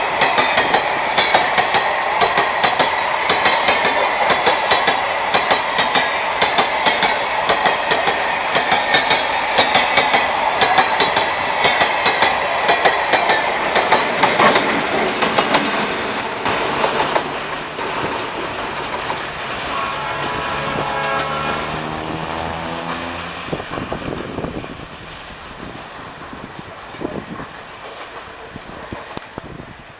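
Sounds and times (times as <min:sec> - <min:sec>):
train wheels clacking over rail joints: 0:05.9 - 0:19.8.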